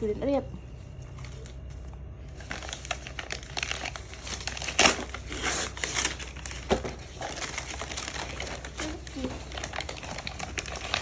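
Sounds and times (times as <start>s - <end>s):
wrapping paper tearing: 2.3s - 11.0s.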